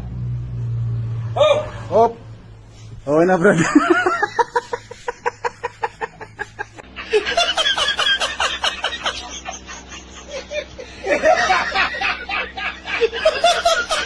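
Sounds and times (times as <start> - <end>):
steady low hum: 0.0 - 14.0
people laughing: 3.4 - 14.0.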